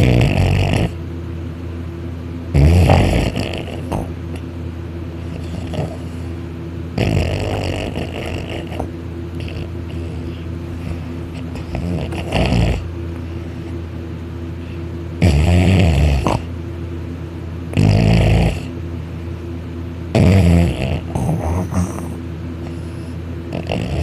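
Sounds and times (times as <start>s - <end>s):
man snoring loudly: 0.0s - 1.0s, 2.6s - 4.2s, 5.3s - 6.2s, 7.0s - 10.3s, 11.4s - 12.9s, 15.2s - 16.5s, 17.8s - 18.7s, 20.1s - 22.2s, 23.5s - 24.0s
steady low hum: 0.0s - 24.0s.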